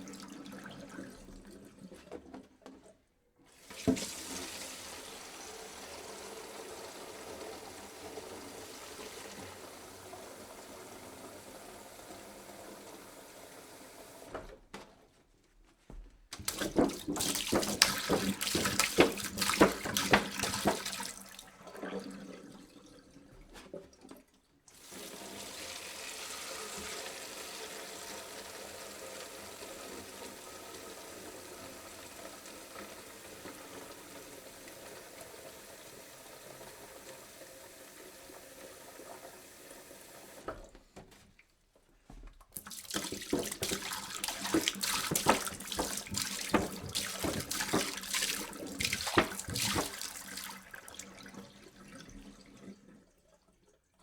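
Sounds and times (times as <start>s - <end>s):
water pouring into jug: 0.0s - 2.2s, 16.4s - 29.0s, 42.6s - 53.8s.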